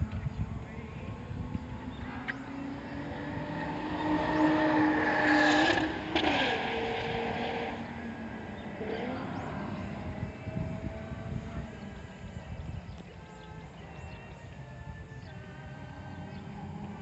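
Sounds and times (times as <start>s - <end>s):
car engine accelerating: 1.0s - 12.3s.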